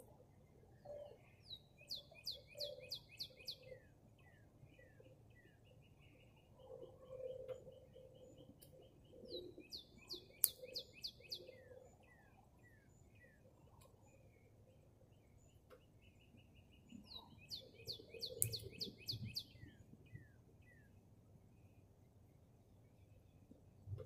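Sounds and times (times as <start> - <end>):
songbird singing: 0.0 - 24.0
faint clicks: 10.4 - 10.8, 18.4 - 18.8.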